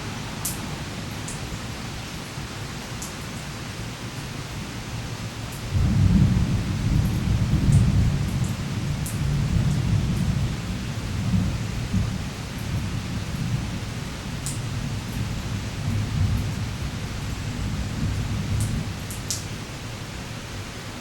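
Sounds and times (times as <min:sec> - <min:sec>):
steady rain: 0:00.0 - 0:21.0
low rumble of thunder: 0:05.7 - 0:19.5.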